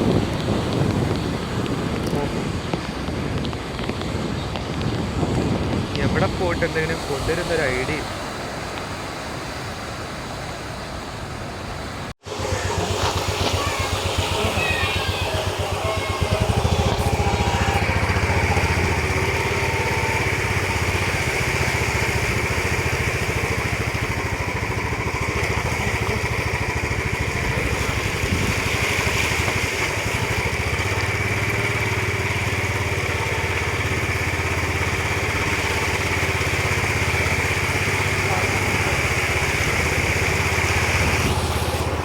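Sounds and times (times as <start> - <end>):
motorcycle engine running: 12.2 - 42.0.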